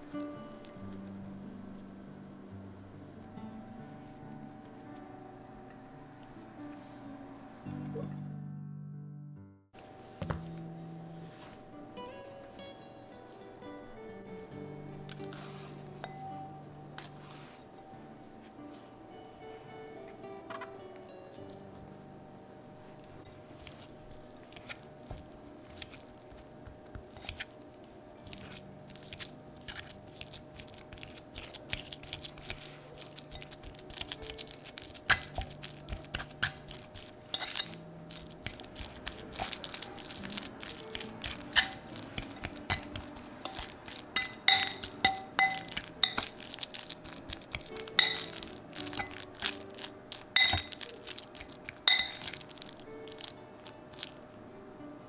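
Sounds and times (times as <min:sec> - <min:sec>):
banana being mashed: 0:23.4 - 0:54.4
fork clinking against bowl: 0:28.2 - 0:53.3.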